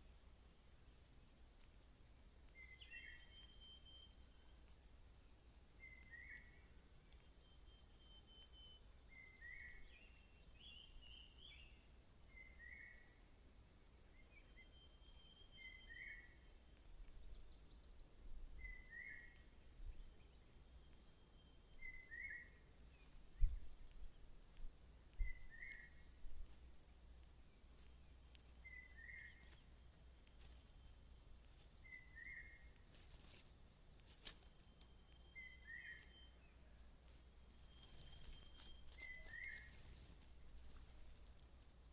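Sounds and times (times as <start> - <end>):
thin high bird chirps: 0.0 - 13.4, 14.0 - 41.9
soft low thumps: 23.1 - 31.7.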